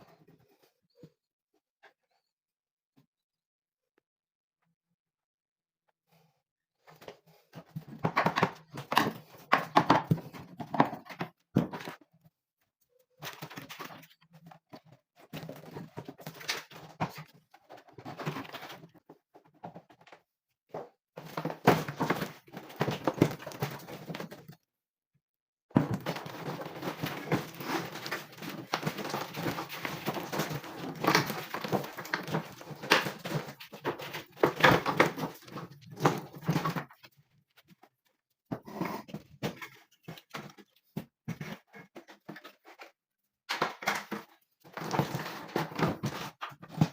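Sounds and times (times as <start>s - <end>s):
parts and tools clattering: 25.8s - 37.1s.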